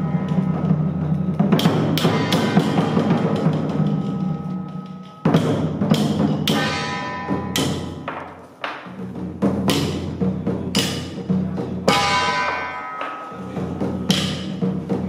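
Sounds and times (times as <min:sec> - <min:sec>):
ringing gongs: 0:00.0 - 0:08.4, 0:11.8 - 0:15.0
cymbal crashes: 0:00.0 - 0:09.0, 0:09.6 - 0:15.0
pounding drum: 0:00.0 - 0:15.0.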